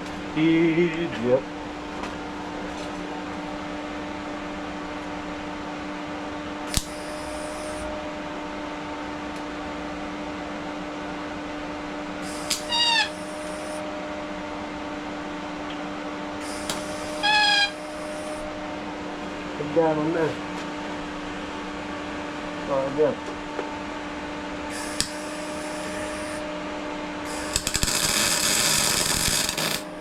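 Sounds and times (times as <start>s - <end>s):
steady electrical hum: 0.0s - 30.0s
welder click: 6.7s - 7.8s, 12.3s - 12.8s, 16.5s - 17.2s, 24.7s - 26.4s, 27.3s - 30.0s
sharp chirping whine: 6.7s - 7.9s, 12.2s - 13.8s, 16.4s - 18.5s, 24.7s - 26.4s, 27.3s - 30.0s
welding arc hissing: 6.7s - 7.9s, 12.2s - 13.8s, 16.4s - 18.4s, 24.7s - 26.4s, 27.3s - 30.0s.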